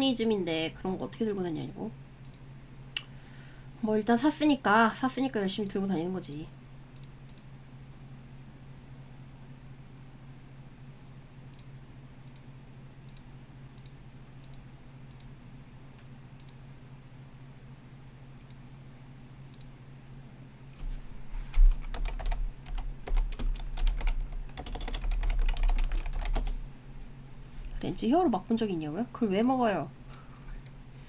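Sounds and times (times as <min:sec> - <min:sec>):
faint low hum: 0:00.0 - 0:31.0
keyboard typing: 0:21.4 - 0:26.6.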